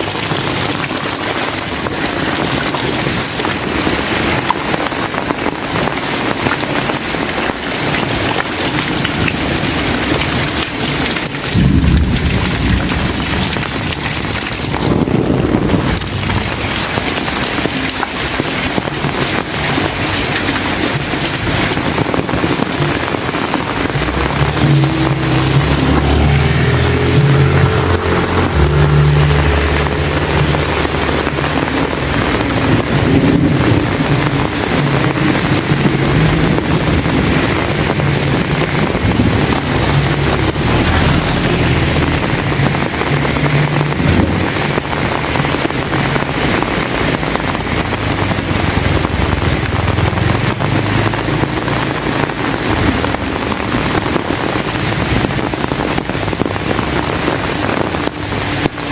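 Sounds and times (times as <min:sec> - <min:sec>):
heavy rain pouring: 0:00.0 - 0:58.9
loud low rumble: 0:09.3 - 0:18.7, 0:21.1 - 0:58.7.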